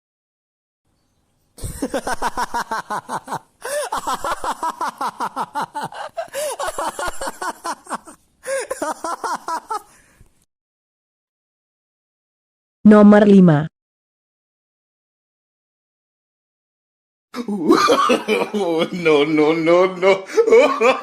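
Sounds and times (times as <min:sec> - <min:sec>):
person laughing hard: 0:01.6 - 0:10.0, 0:17.4 - 0:21.0.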